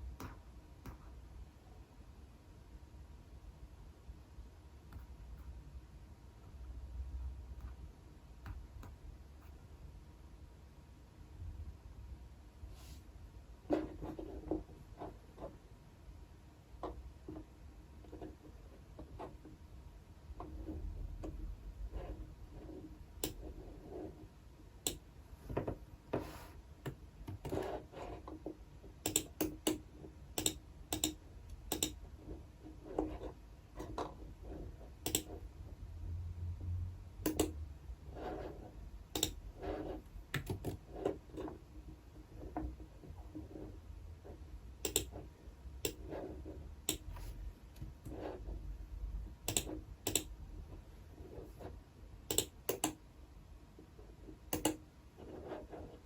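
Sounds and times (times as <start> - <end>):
typing on computer keyboard: 29.0 - 29.8, 30.4 - 32.0, 35.0 - 35.4, 37.2 - 37.6, 39.2 - 39.4, 40.3 - 40.8, 44.8 - 45.2, 49.5 - 50.3, 52.3 - 53.0, 54.5 - 54.8.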